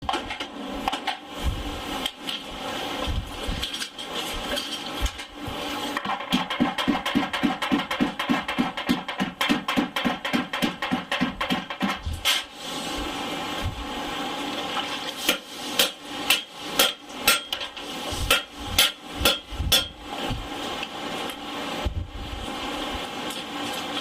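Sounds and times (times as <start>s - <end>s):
steady background hum: 0.0s - 24.0s
hammer forging steel: 15.3s - 20.0s.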